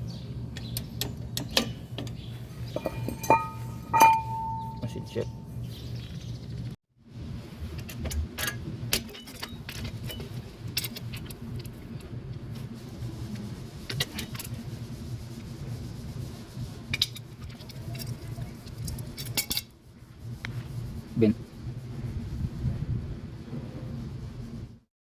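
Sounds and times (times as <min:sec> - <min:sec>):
steady low hum: 0:00.0 - 0:24.8
small metal parts clinking: 0:02.7 - 0:05.2.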